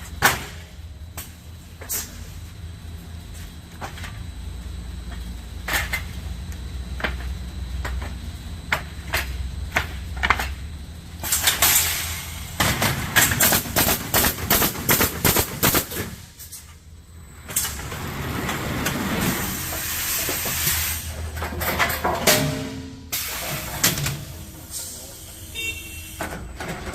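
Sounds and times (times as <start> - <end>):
hiss of air: 11.2 - 12.6, 17.5 - 21.3, 23.1 - 26.2
nail guns firing: 12.6 - 16.2.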